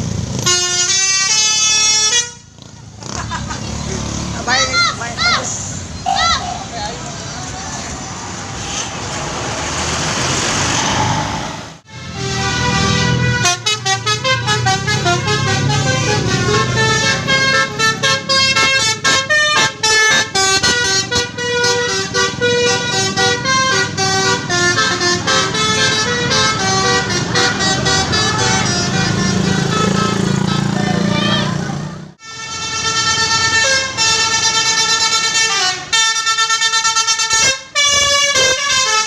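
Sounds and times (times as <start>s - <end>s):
vehicle noise: 0.0s - 39.0s
multi-tone musical vehicle horn: 0.4s - 3.2s, 11.8s - 31.6s, 32.2s - 39.0s.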